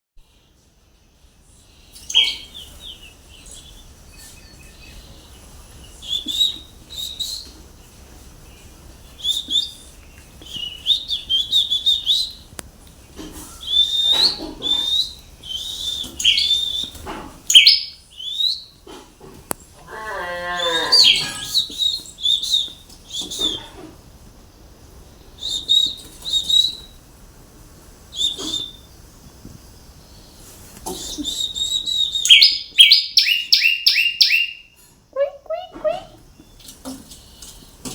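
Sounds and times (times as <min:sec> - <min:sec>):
bird chirping: 0:01.7 - 0:07.5, 0:13.6 - 0:18.8, 0:20.4 - 0:23.7, 0:30.1 - 0:37.6
low falling bird call: 0:19.8 - 0:23.6.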